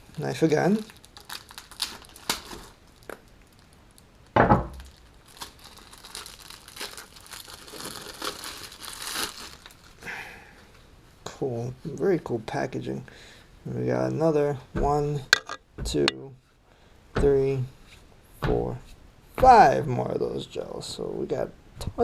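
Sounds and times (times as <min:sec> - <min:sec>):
plastic crinkling and rustling: 0:00.0 - 0:10.0
thump: 0:04.4 - 0:04.8.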